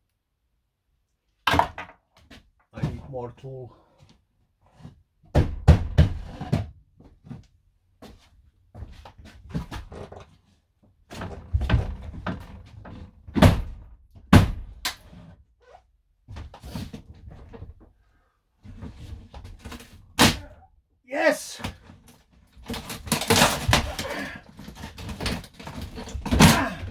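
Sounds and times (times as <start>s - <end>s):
hand tools knocking and thudding: 25.0s - 26.9s.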